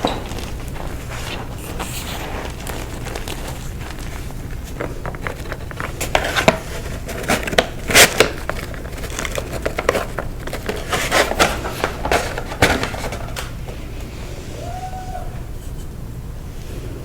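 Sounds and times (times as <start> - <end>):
chalk being crushed: 0.0 - 13.4.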